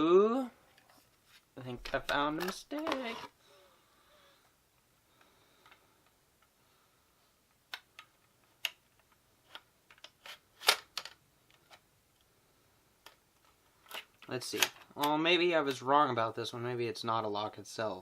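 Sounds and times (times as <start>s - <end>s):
plastic clicks and clacks: 7.7s - 11.8s.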